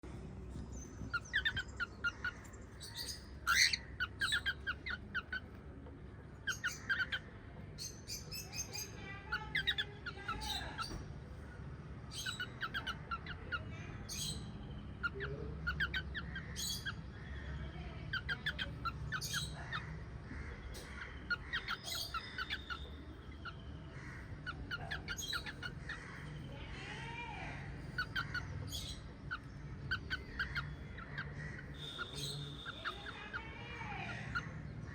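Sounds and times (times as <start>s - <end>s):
parrots chirping: 0.8s - 11.1s, 12.0s - 34.9s.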